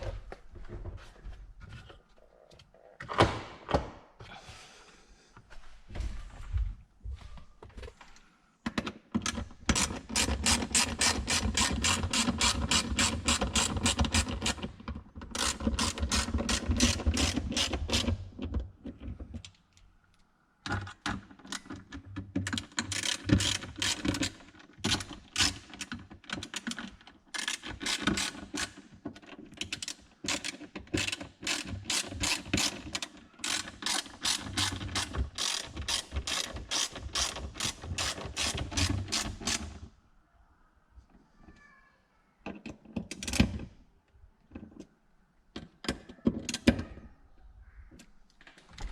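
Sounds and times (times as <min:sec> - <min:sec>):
ratchet wrench clicking: 0:33.4 - 0:39.6.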